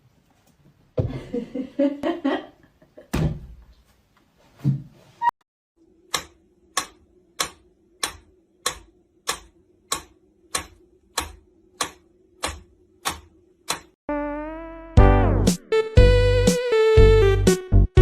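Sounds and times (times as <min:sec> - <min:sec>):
held musical tone: 0:14.1 - 0:18.0.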